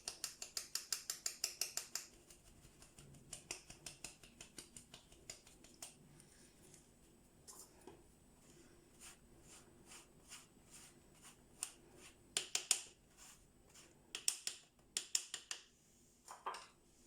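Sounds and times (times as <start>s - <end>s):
dry flour stirred in a bowl: 0.0s - 6.0s, 8.4s - 14.4s.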